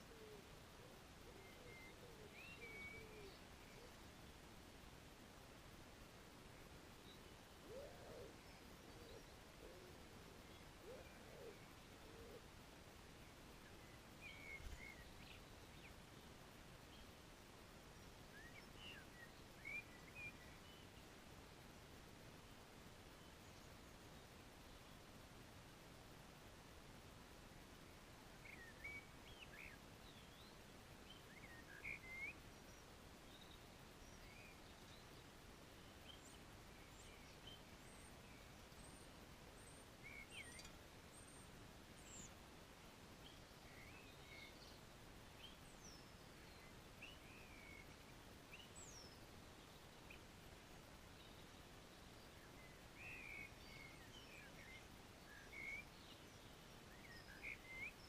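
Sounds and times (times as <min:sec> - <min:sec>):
steady outdoor hiss: 0:00.0 - 0:58.0.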